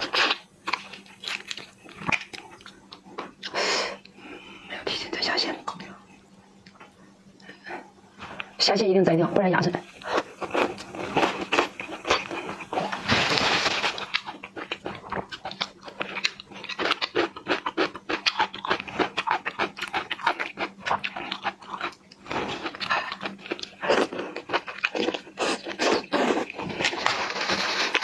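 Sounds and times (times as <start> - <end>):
chewing with mouth clicks and crunches: 0.0 - 4.2, 9.8 - 28.0.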